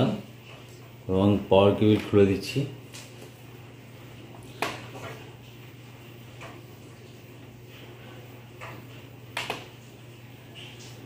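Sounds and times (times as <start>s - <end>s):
low electrical hum: 0.0s - 11.0s
laptop clicks and knocks: 9.4s - 9.7s.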